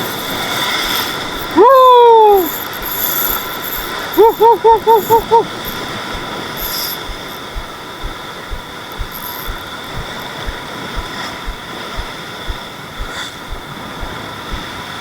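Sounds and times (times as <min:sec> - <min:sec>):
fishing reel knocking: 0:00.0 - 0:01.7, 0:02.3 - 0:14.1
fishing reel whine: 0:02.3 - 0:05.8.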